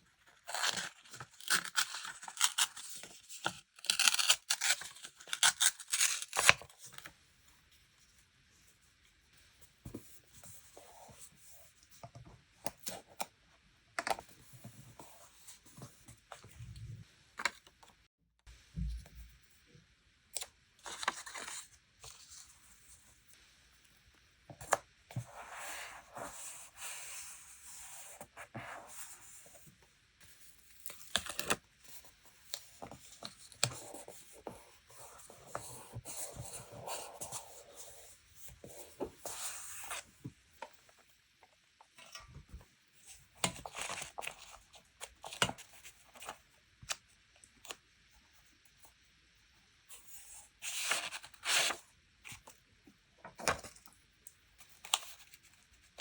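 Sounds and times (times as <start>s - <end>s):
paper rustling and tearing: 0.4s - 6.7s.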